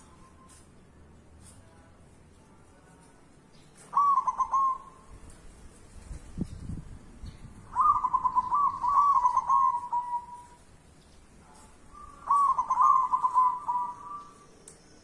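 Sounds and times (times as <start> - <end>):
bird calling: 3.8 - 5.1, 7.7 - 10.7, 11.9 - 14.9.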